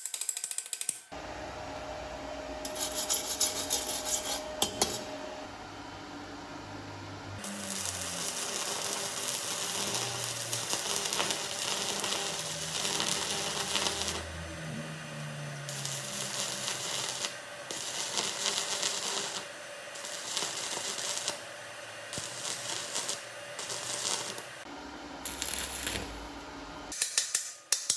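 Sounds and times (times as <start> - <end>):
welding arc crackling hiss: 7.4 - 14.4, 15.1 - 24.6, 25.2 - 27.6.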